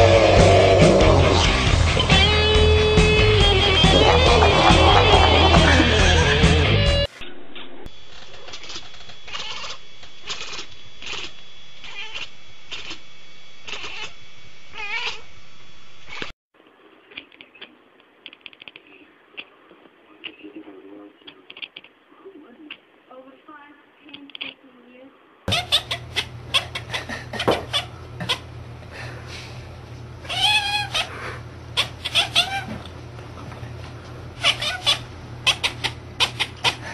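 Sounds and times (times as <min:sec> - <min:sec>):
cat meowing: 0:08.6 - 0:13.0, 0:13.7 - 0:14.1, 0:14.7 - 0:15.2, 0:25.5 - 0:26.8, 0:30.2 - 0:31.1, 0:31.8 - 0:32.7, 0:34.4 - 0:36.8.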